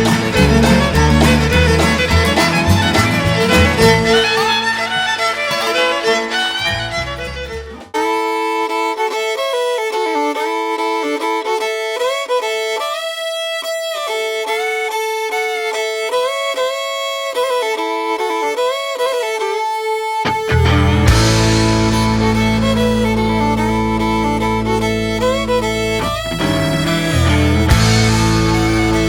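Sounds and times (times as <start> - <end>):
country band music: 0.0 - 12.6, 20.2 - 29.0
solo fiddle slow melody: 0.0 - 29.0.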